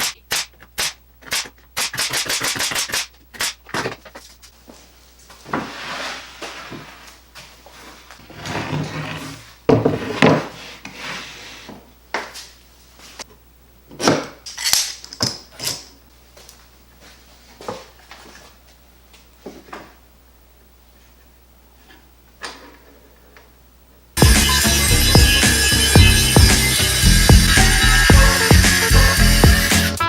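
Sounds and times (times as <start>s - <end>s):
wood sliding and scraping: 5.4s - 11.8s.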